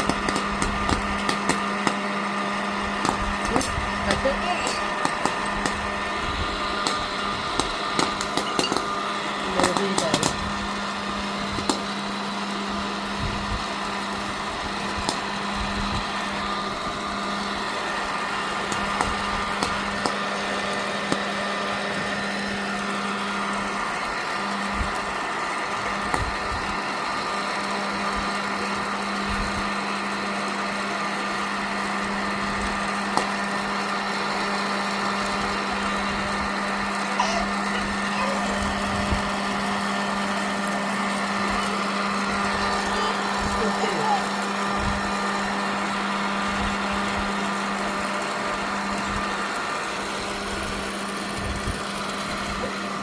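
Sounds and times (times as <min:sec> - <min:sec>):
popcorn kernels popping: 0:00.0 - 0:12.2, 0:14.9 - 0:15.8, 0:18.6 - 0:21.5, 0:32.4 - 0:33.4
popcorn machine motor hum: 0:00.0 - 0:53.0.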